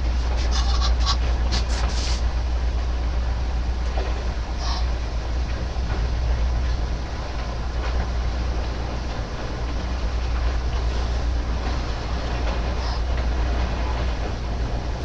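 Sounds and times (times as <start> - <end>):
heavy machinery running: 0.0 - 15.0.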